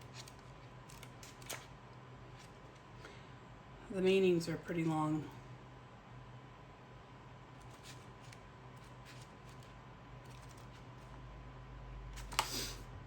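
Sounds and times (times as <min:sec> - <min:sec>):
paper rustling: 0:00.0 - 0:02.9, 0:07.6 - 0:11.2.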